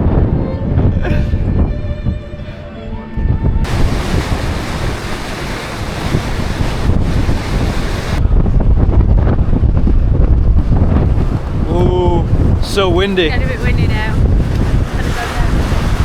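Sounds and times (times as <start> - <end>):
heavy low wind rumble: 0.0 - 16.0
wind buffeting microphone: 0.0 - 16.0
rushing hiss of wind and water: 3.6 - 8.2, 10.6 - 16.0.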